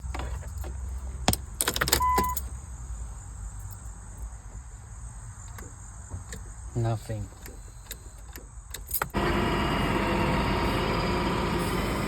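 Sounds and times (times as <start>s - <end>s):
key turning in ignition clicks: 0.1s - 2.5s, 7.4s - 9.2s.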